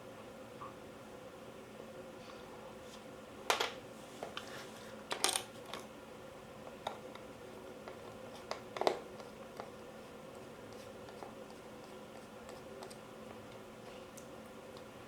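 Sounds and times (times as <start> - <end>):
faint steady hum: 0.0 - 15.0
clicks and knocks of handled parts: 5.1 - 5.9.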